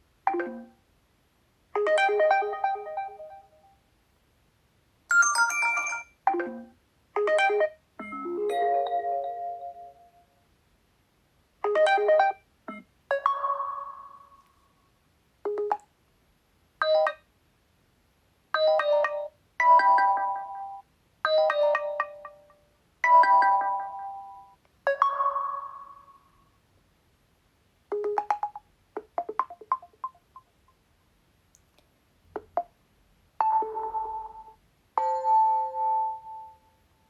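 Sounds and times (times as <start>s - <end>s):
phone notification chimes: 5.1s - 6.6s.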